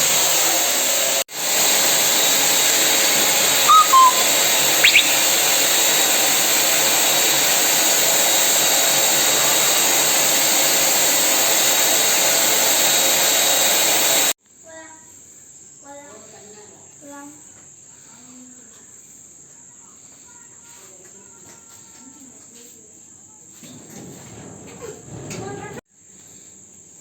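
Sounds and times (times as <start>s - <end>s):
power tool hissing: 0.0s - 14.3s.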